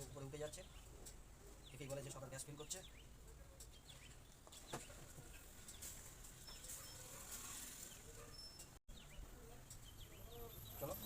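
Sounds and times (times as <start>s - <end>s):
faint bird chirps: 2.5s - 11.0s.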